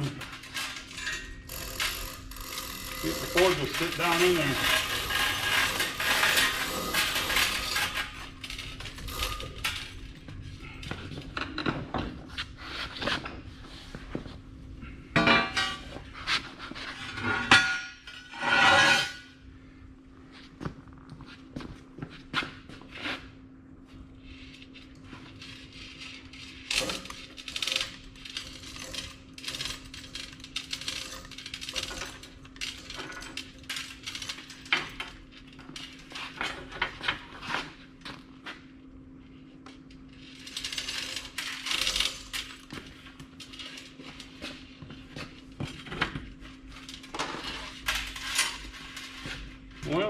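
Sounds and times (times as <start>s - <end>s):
steel clanking and scraping: 0.0s - 13.4s, 15.2s - 19.3s, 25.1s - 37.7s, 40.3s - 49.5s.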